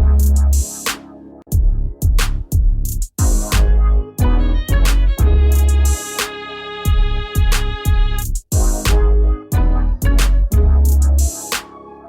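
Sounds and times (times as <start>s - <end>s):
heavy bass notes: 0.0s - 0.9s, 1.5s - 6.2s, 6.9s - 11.4s.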